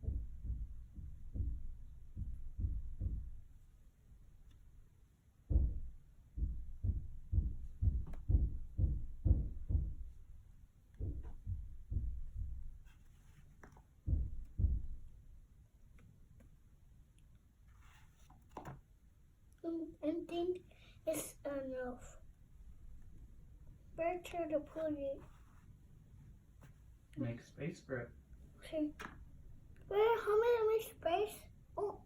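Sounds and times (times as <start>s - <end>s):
dull low thumps: 0.0s - 3.6s, 5.5s - 12.9s, 14.0s - 15.2s.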